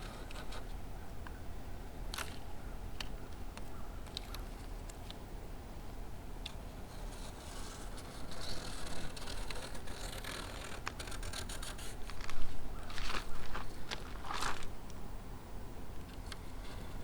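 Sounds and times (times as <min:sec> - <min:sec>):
rustling of cut vinyl strip: 0:06.5 - 0:15.0.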